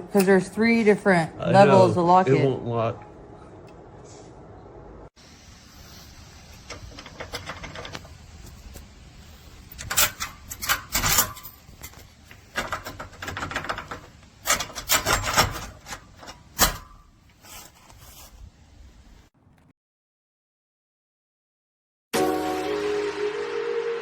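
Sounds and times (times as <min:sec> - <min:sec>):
metal lock clicking and scraping: 0:06.6 - 0:08.2, 0:09.7 - 0:17.1.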